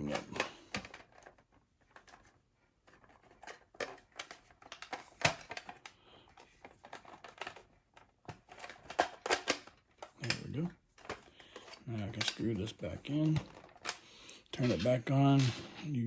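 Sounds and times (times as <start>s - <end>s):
plastic and metal parts clicking: 0.0s - 15.6s.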